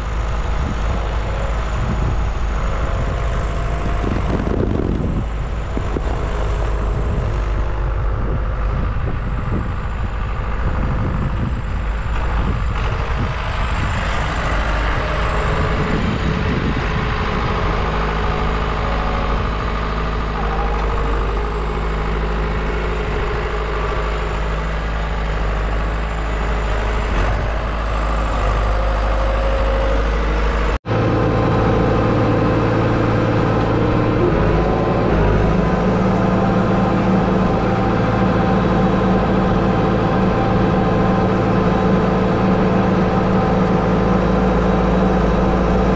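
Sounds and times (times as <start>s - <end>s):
farm vehicle engine running: 0.0s - 45.9s.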